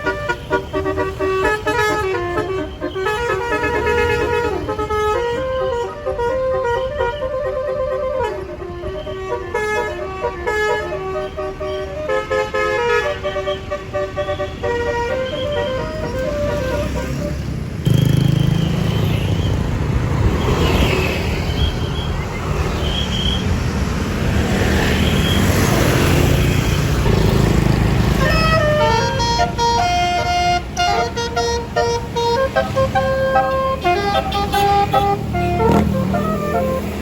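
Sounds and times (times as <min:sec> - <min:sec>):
multi-tone bus horn tune: 0:00.0 - 0:19.1, 0:25.0 - 0:37.0
bus engine running: 0:26.5 - 0:37.0.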